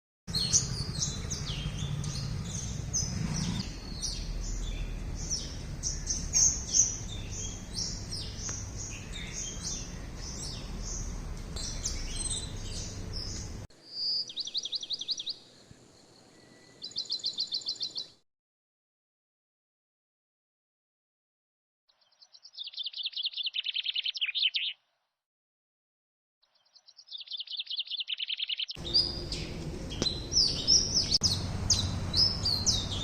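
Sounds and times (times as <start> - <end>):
songbirds chirping and singing: 0.3 - 18.2, 21.9 - 24.8, 26.4 - 33.0
bird trilling: 27.0 - 33.0.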